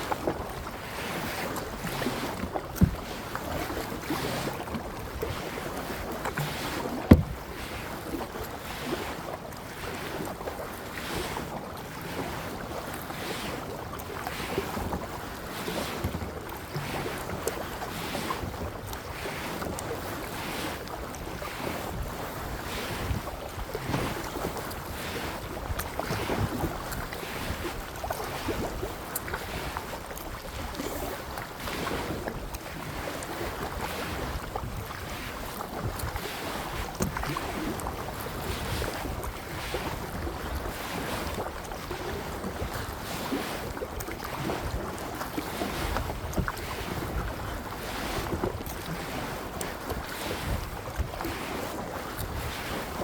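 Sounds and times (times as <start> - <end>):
paddle splashing through water: 0.0 - 53.0.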